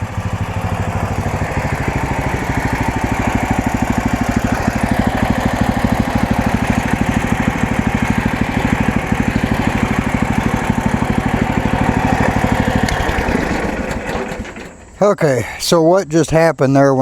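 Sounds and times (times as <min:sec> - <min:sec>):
gasoline engine running: 0:00.0 - 0:15.8.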